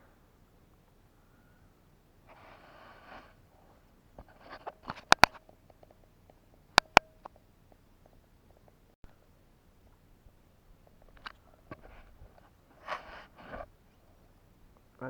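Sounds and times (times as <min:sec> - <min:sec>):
sharp clicks or knocks: 0:04.9 - 0:05.4, 0:06.8 - 0:07.4
short rustle: 0:10.8 - 0:14.4.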